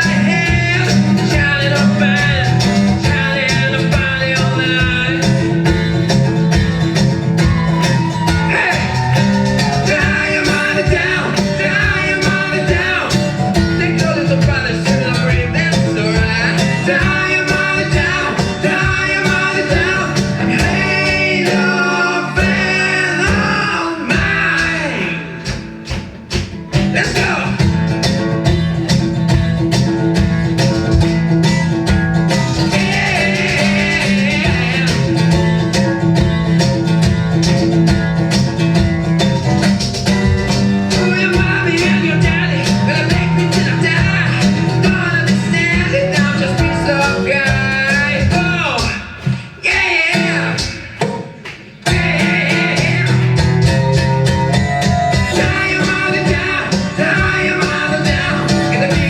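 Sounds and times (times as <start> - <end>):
person singing: 0.0 - 5.6, 7.3 - 25.6, 26.8 - 27.8, 32.3 - 35.4, 40.8 - 51.2, 51.8 - 59.0
country band with guitar: 0.0 - 59.0.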